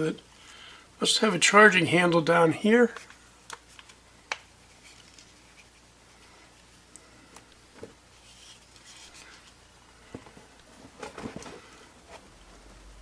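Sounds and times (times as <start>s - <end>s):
gun handling clicks and rubbing: 2.9s - 5.9s.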